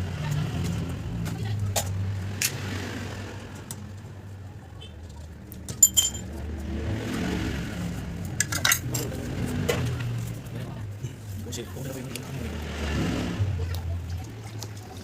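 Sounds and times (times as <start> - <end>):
sharp metallic clinks: 5.8 - 6.3.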